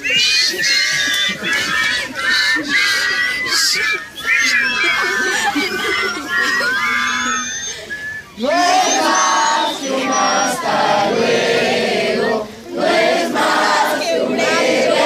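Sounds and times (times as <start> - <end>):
group singing in unison: 8.4 - 15.0.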